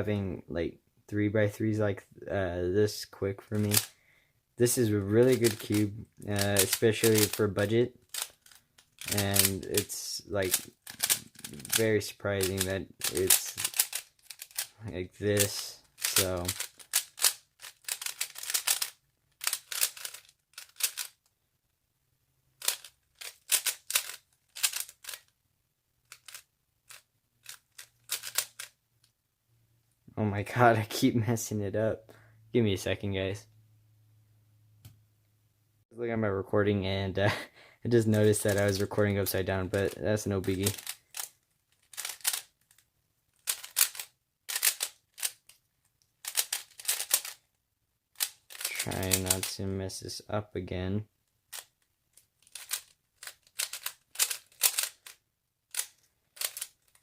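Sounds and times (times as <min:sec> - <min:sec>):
puzzle cube clicking: 0:03.5 - 0:04.0, 0:04.7 - 0:21.3, 0:22.6 - 0:25.4, 0:26.0 - 0:29.1, 0:38.1 - 0:39.1, 0:39.7 - 0:47.5, 0:48.1 - 0:49.6, 0:51.5 - 0:57.0.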